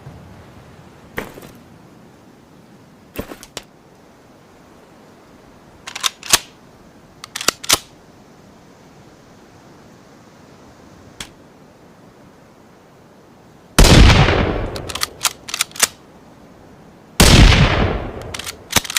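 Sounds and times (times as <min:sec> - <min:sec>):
rifle bolt clicking: 0:05.9 - 0:06.5, 0:07.2 - 0:07.9, 0:14.7 - 0:16.0, 0:18.2 - 0:18.9.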